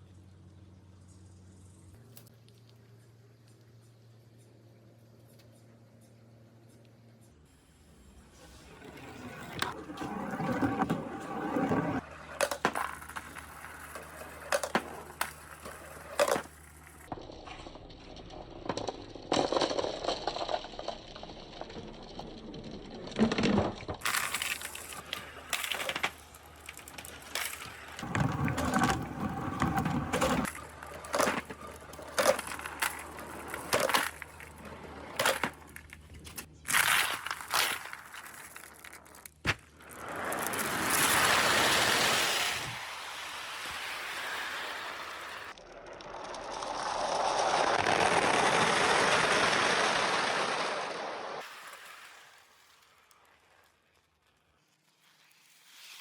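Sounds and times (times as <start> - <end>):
water pouring: 8.4 - 18.4, 19.2 - 47.5
marbles rolling down wooden chutes: 8.4 - 52.7.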